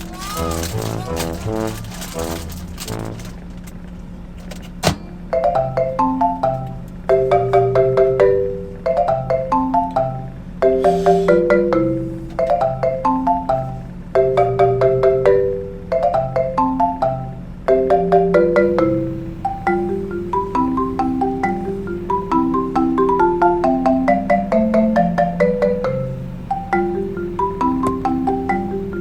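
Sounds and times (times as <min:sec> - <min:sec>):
steady low tone: 0:00.0 - 0:03.6, 0:18.6 - 0:29.0
marimba-like mallet melody: 0:05.3 - 0:29.0.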